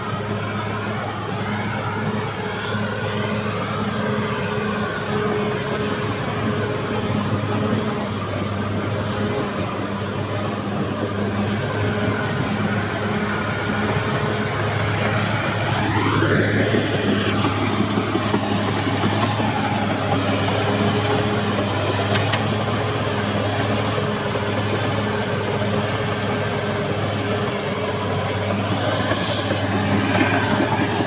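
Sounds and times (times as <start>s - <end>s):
bulldozer diesel engine running: 0.0s - 31.0s.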